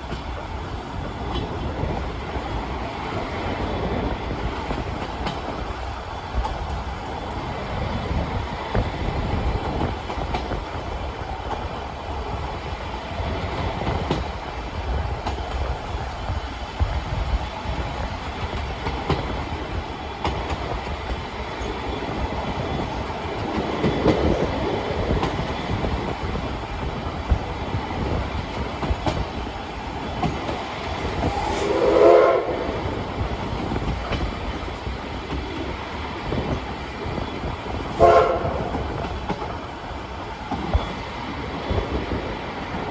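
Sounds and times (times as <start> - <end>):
train coach rumbling: 0.0 - 42.9
multi-tone train whistle: 31.2 - 32.8, 37.9 - 39.1.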